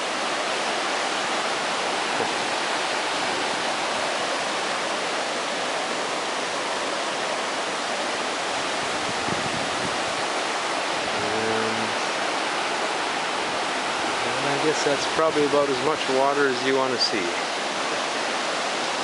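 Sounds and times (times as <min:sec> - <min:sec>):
floodwater rushing: 0:00.0 - 0:19.0.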